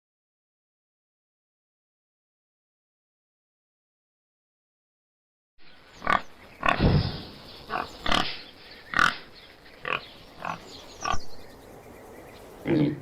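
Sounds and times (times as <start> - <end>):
faint steady background noise: 5.6 - 13.0.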